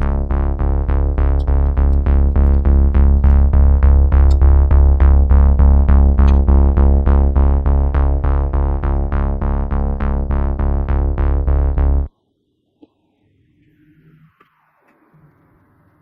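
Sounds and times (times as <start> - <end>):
electronic music with synth and bass: 0.0 - 12.1.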